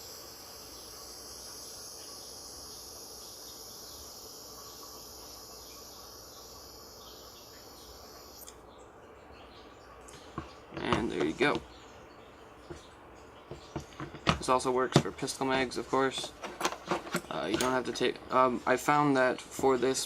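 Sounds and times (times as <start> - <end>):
gas hissing into magazine: 0.0 - 7.2.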